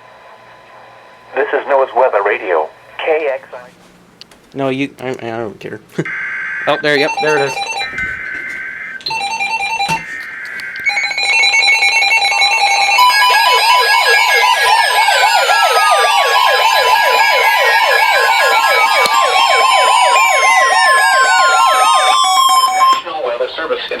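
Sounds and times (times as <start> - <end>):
steady warning tone: 4.7 - 23.8
fast warbling alarm: 6.0 - 23.7
data header burst: 6.1 - 20.1.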